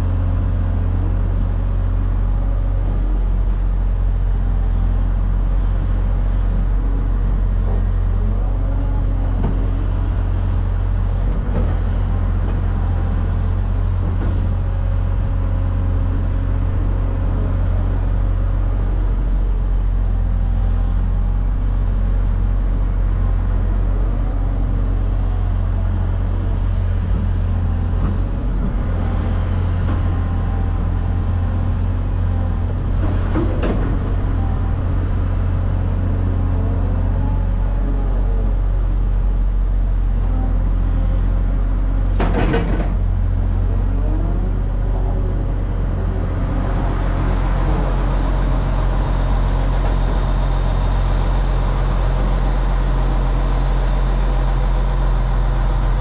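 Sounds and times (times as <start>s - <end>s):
heavy engine rumbling: 0.0s - 56.0s
clunks and rattles: 11.2s - 12.9s, 13.8s - 14.7s, 26.6s - 35.2s, 42.0s - 43.3s.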